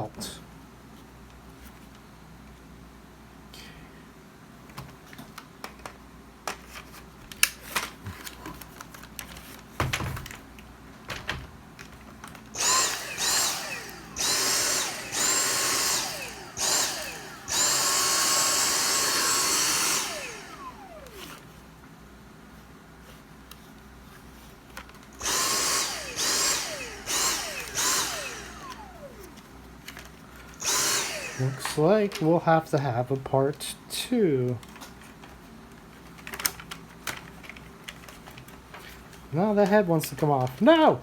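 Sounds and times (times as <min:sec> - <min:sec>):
power drill whirring: 0:12.5 - 0:21.5, 0:25.2 - 0:29.4, 0:30.5 - 0:32.3
clicks of plastic parts and tools: 0:34.5 - 0:40.7.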